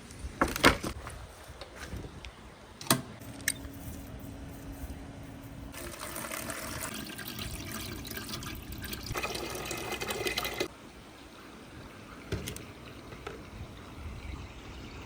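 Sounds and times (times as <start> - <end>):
water running: 5.7 - 15.0.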